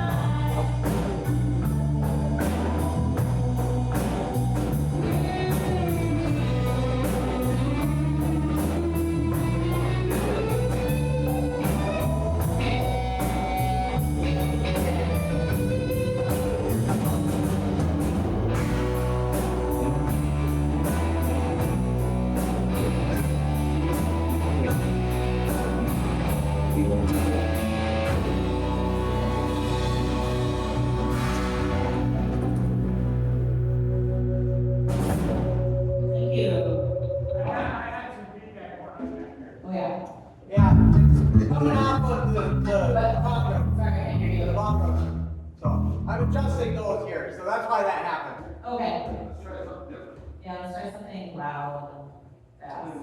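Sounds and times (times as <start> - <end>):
rock band playing live: 0.0 - 37.5, 40.6 - 43.8.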